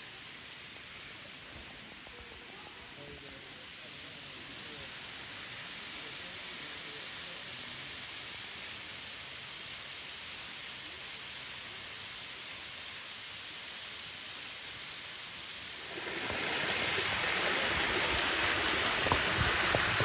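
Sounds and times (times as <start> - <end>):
waterfall rushing: 15.6 - 20.0.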